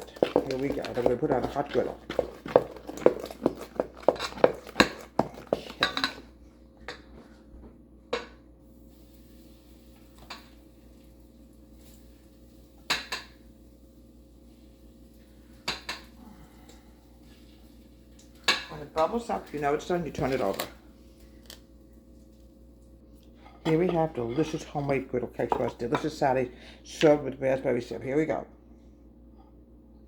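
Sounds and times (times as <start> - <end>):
utensils clinking on bowl: 0.0 - 6.3, 23.6 - 26.2
faint steady hum: 0.0 - 30.0.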